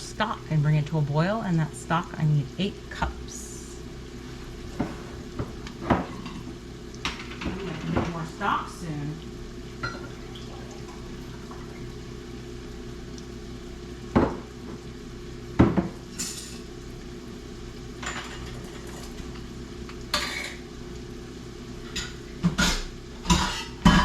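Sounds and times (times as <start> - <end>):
steady low hum: 0.0 - 24.0
vegetables sizzling in a pot: 0.0 - 24.0
utensils and cookware clinking: 16.1 - 16.7, 18.0 - 19.4, 20.1 - 20.6, 21.8 - 24.0.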